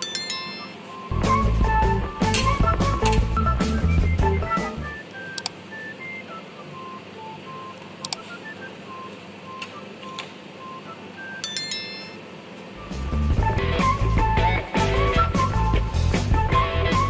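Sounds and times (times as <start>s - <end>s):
bright chime: 0.0s - 1.0s, 11.4s - 12.3s
soft electronic tone melody: 0.0s - 1.4s, 3.4s - 13.3s.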